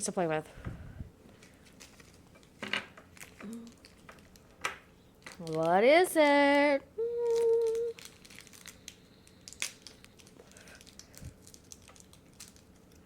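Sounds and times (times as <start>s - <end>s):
plastic packaging crinkling and tearing: 1.4s - 6.0s, 7.2s - 13.0s
person humming: 3.4s - 3.8s, 6.8s - 8.0s.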